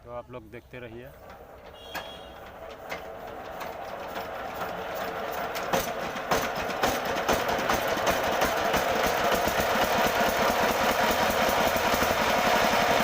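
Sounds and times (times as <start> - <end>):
diesel engine knocking: 0.9 - 13.0.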